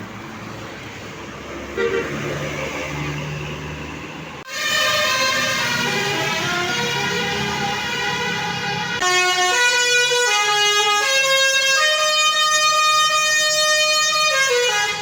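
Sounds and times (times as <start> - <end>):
multi-tone air horns: 4.9 - 15.0.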